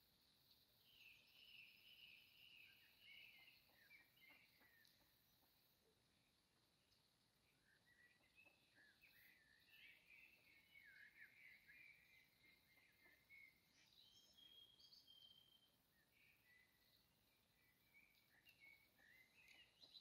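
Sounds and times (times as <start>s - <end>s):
soft steady hiss: 0.0s - 20.0s
birds chirping and whistling: 0.8s - 5.0s, 7.6s - 17.0s, 17.7s - 20.0s.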